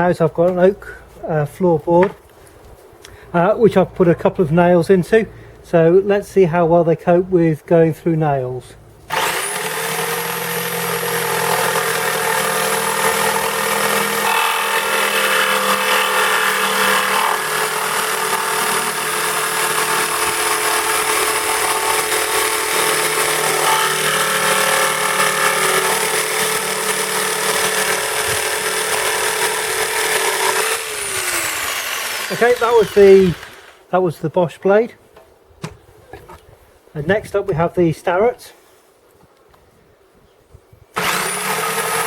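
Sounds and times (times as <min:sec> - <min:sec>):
electric jigsaw cutting wood: 0:09.1 - 0:33.8, 0:41.0 - 0:42.0.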